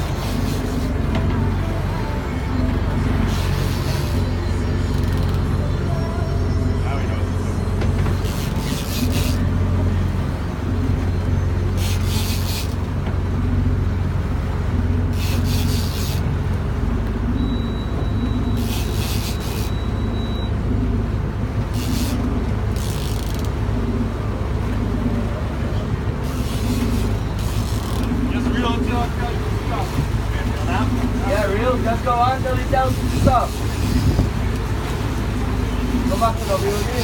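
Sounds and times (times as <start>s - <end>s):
boat engine droning: 0.0s - 37.0s
water hissing: 15.1s - 16.3s.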